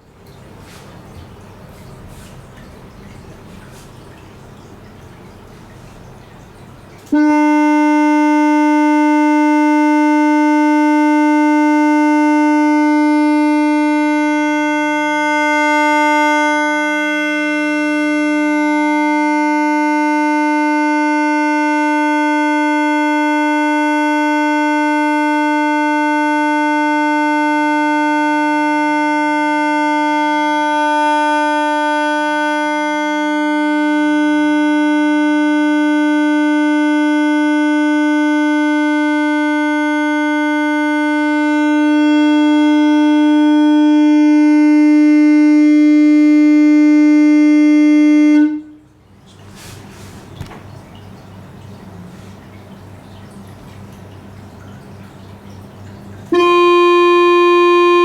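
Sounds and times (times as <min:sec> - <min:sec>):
buzzy electronic test tone: 0:07.1 - 0:48.9, 0:56.3 - 0:58.0.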